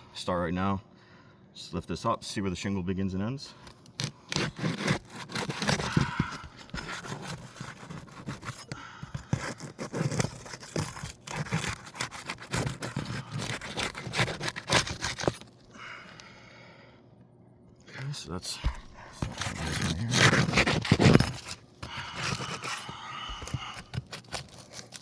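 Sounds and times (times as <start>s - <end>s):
roofing shingles scraping and tearing: 4.0s - 15.4s, 19.0s - 25.0s.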